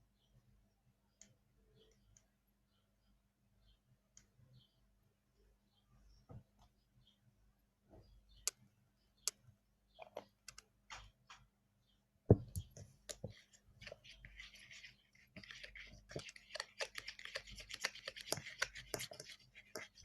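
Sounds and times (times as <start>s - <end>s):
stirring slime mixture scraping: 12.8s - 20.0s.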